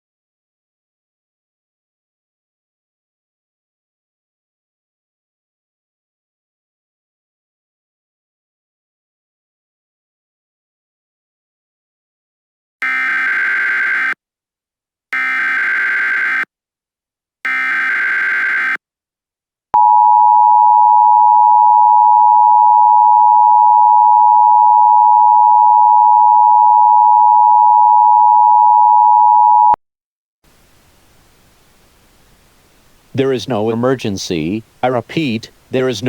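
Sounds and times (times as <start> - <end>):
harsh buzzing data bursts: 12.8 - 14.2, 15.2 - 16.5, 17.5 - 18.8.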